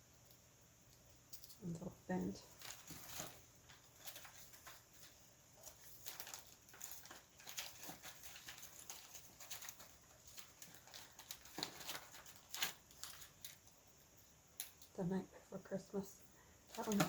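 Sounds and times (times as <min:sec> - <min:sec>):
paper rustling and tapping: 0:02.6 - 0:13.7, 0:16.7 - 0:17.0.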